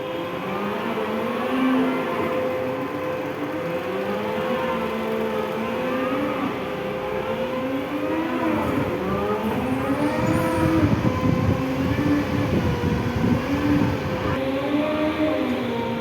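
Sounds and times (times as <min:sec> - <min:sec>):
forklift engine revving: 0:08.2 - 0:14.4.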